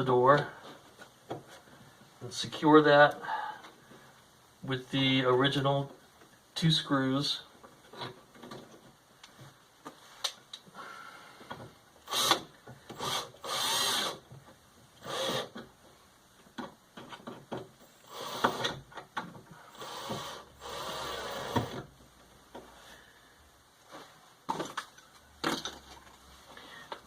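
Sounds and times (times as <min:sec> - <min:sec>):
screwdriving into wood: 0:17.2 - 0:19.0, 0:19.7 - 0:21.9.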